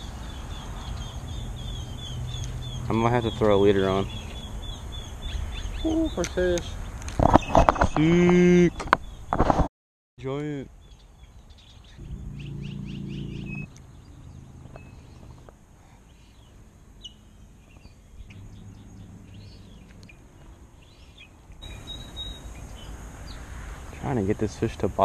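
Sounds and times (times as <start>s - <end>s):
small birds chirping: 0.0s - 9.4s, 10.2s - 24.8s
low steady hum: 12.0s - 23.0s.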